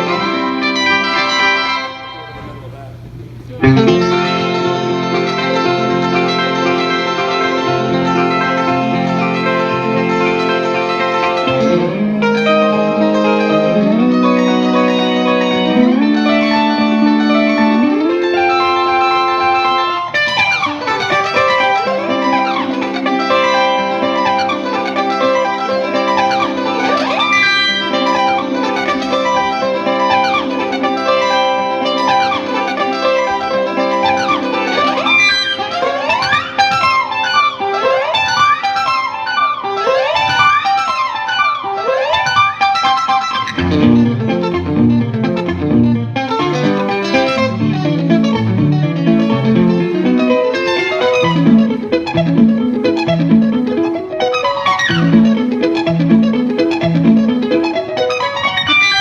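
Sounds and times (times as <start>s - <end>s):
electric guitar melodic runs: 0.0s - 59.0s
held guitar chord: 0.0s - 59.0s
low rhythmic bass notes: 1.9s - 24.3s, 43.5s - 54.1s, 54.8s - 58.0s.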